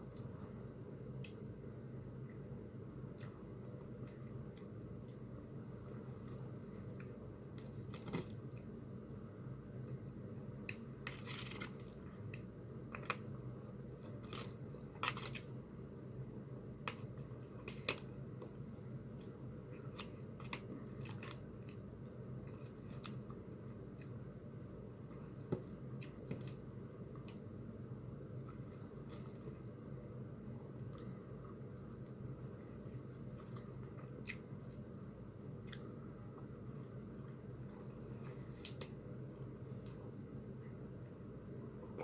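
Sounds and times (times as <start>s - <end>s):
steady low hum: 0.0s - 42.0s
chewing and crunching: 32.8s - 34.9s, 35.6s - 37.9s.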